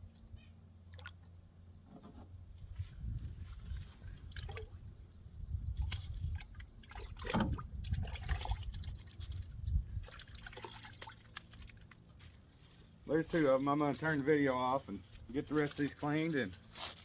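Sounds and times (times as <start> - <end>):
wet squishes handling fish: 3.6 - 4.7, 5.8 - 13.8.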